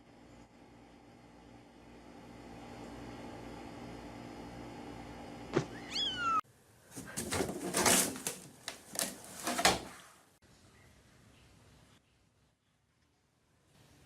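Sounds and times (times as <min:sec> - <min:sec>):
cat meowing: 0:05.6 - 0:06.4.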